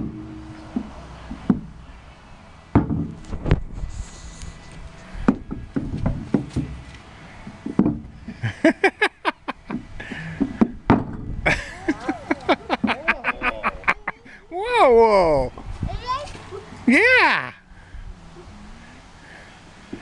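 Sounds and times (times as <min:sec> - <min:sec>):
wooden cradle knocking and thumping: 0:00.0 - 0:01.8, 0:02.7 - 0:03.6, 0:05.2 - 0:08.2, 0:09.7 - 0:11.4.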